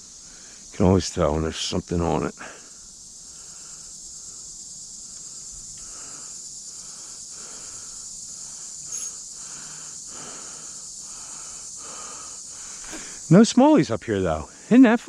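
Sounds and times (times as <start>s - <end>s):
insects droning: 0.0s - 15.0s
soft rustle: 12.7s - 13.2s.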